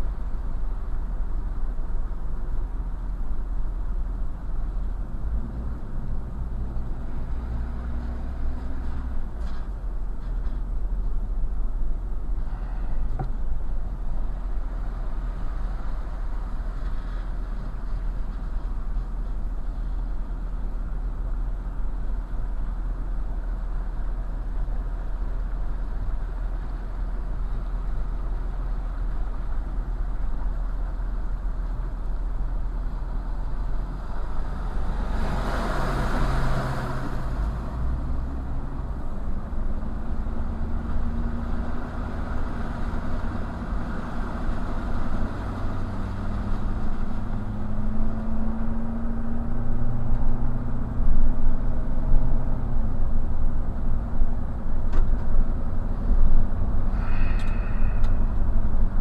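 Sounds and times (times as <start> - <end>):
low rumble: 0.0 - 59.0
engine hum rising in pitch: 32.7 - 59.0
vehicle rushing past: 33.9 - 53.6, 55.7 - 59.0.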